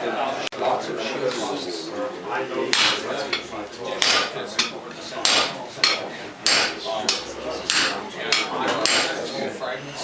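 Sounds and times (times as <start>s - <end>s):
hammer striking metal: 2.7s - 9.2s.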